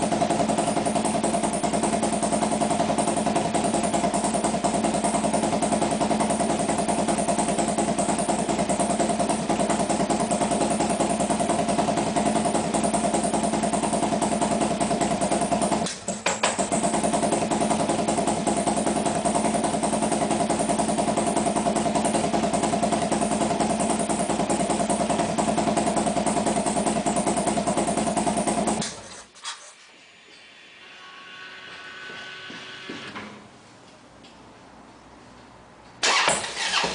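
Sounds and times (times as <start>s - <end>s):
motorcycle engine idling: 0.0s - 29.2s.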